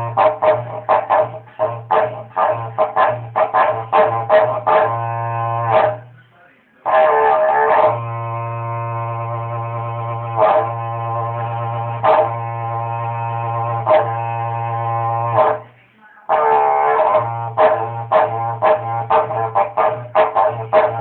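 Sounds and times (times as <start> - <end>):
low blown drone: 6.9 - 15.7.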